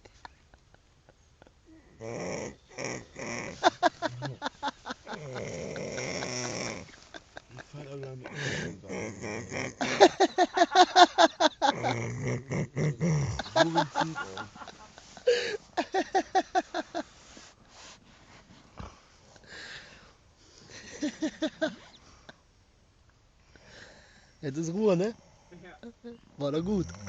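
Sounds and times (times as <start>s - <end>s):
man snoring loudly: 2.0s - 6.9s, 26.6s - 27.0s.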